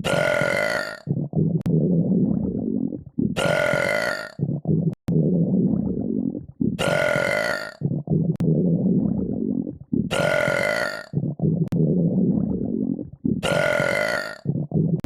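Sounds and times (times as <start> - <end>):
person burping: 0.0 - 1.1, 3.4 - 4.4, 6.8 - 7.8, 10.1 - 11.3, 13.4 - 15.0.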